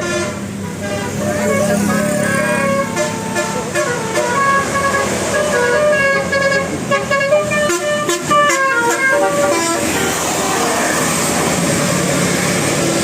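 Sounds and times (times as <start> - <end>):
bus musical horn playing tune: 0.0 - 10.9.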